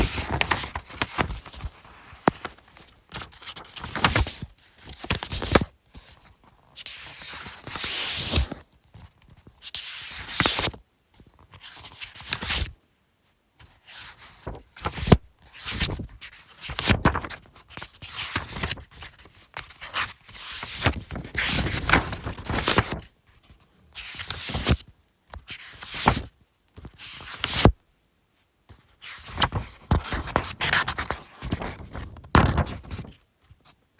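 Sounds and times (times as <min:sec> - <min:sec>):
paper pages turning: 0:00.0 - 0:06.3, 0:14.0 - 0:23.1, 0:24.0 - 0:24.8, 0:25.4 - 0:27.7, 0:29.0 - 0:33.2.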